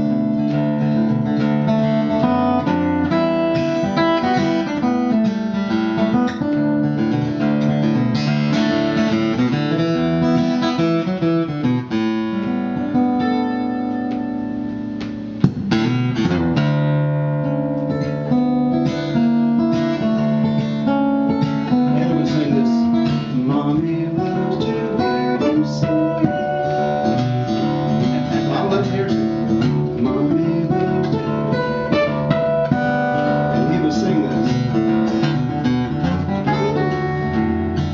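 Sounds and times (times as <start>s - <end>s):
fingerstyle acoustic guitar: 0.0s - 37.9s.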